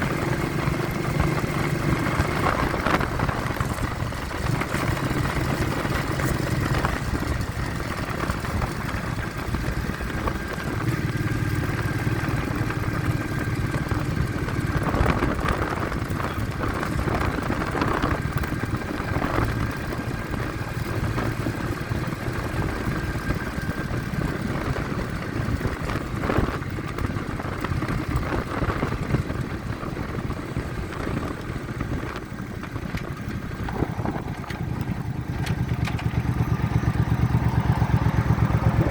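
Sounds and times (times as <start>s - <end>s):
vehicle engine running: 0.0s - 38.9s
wind buffeting microphone: 0.0s - 38.9s.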